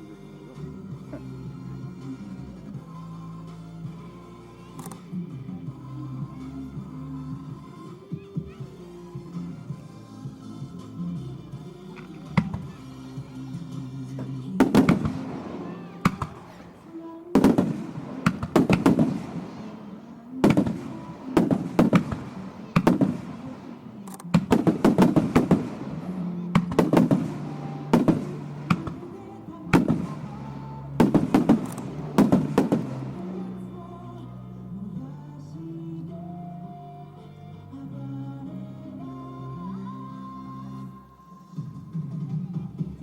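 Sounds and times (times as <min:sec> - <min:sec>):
background music: 0:00.0 - 0:43.0
fireworks bursting with sharp bangs: 0:04.8 - 0:09.9, 0:11.9 - 0:34.5.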